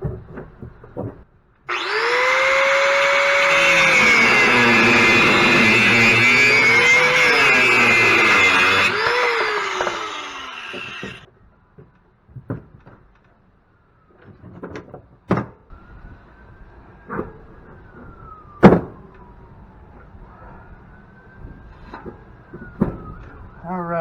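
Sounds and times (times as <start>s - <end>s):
distant siren: 1.7s - 11.3s, 15.7s - 24.0s
power tool winding down: 1.7s - 11.3s.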